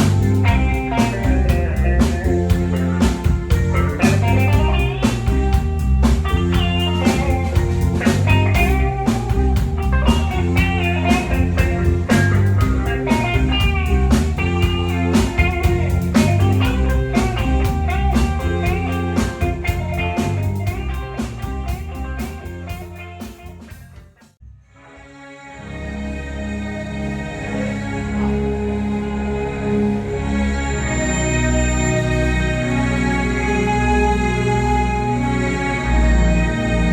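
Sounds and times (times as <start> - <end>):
electric guitar: 0.0 - 24.0
drum kit beat: 0.0 - 24.4
bass guitar: 0.0 - 24.7, 25.6 - 36.9.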